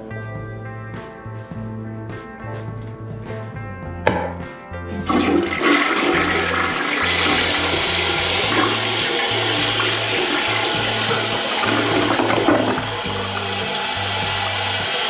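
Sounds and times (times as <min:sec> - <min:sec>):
toilet water rushing: 0:05.1 - 0:15.0.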